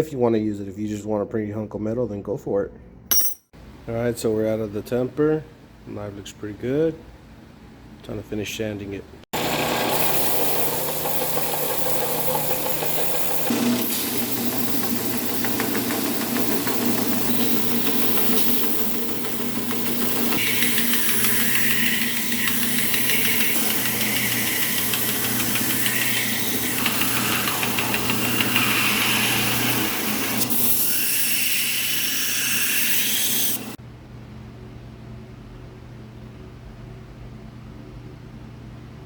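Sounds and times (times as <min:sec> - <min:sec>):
motor hum: 0:09.4 - 0:30.5
power sander grinding blade: 0:09.4 - 0:33.8.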